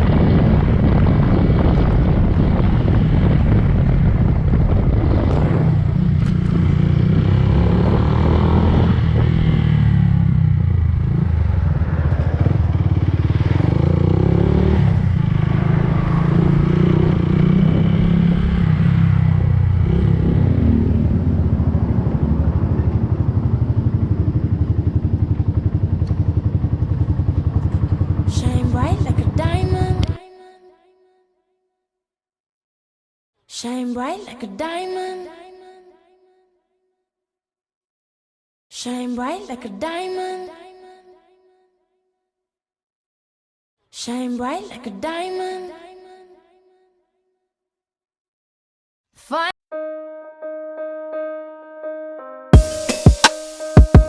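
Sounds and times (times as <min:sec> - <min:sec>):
motorcycle engine running: 0:00.0 - 0:30.2.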